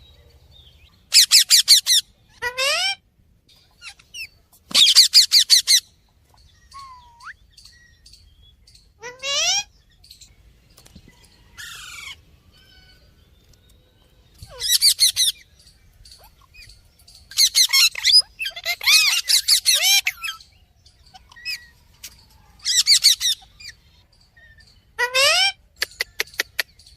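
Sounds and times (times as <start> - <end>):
baby parrot squawky chirps: 1.1 - 3.0, 3.8 - 5.9, 6.7 - 7.4, 9.0 - 9.7, 14.4 - 15.4, 17.3 - 20.5, 22.6 - 23.8, 24.4 - 26.6.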